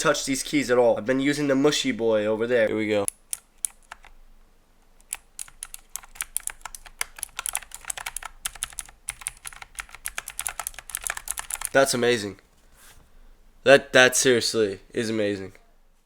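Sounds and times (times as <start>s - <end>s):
mechanical keyboard clicking: 3.1s - 4.2s, 5.0s - 11.8s.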